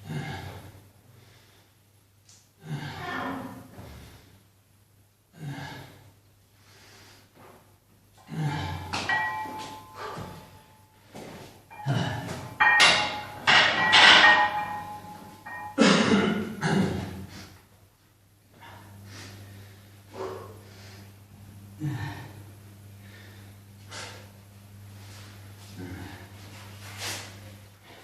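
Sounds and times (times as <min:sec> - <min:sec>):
heavy breathing: 0:09.7 - 0:12.5, 0:18.5 - 0:24.4
metal weights clanking: 0:11.7 - 0:15.8.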